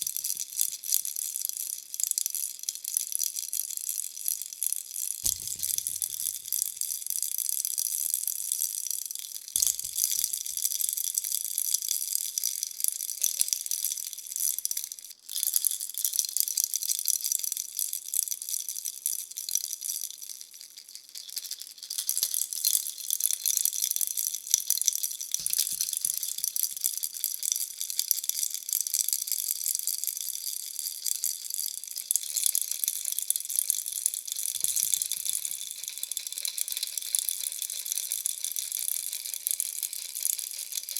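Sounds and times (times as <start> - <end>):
baby rattle shaking: 0.0 - 0.9, 5.3 - 7.1, 9.6 - 11.9, 20.1 - 28.6, 29.8 - 40.9.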